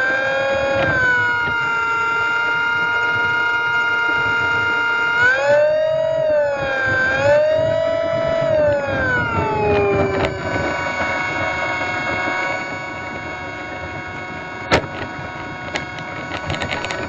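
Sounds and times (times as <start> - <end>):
model plane motor and propeller whining: 0.0 - 17.0
wind rush: 5.9 - 17.0.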